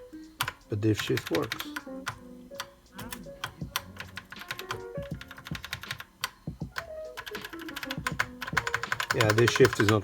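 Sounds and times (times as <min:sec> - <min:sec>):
keyboard keystrokes clicking: 0:00.4 - 0:10.0.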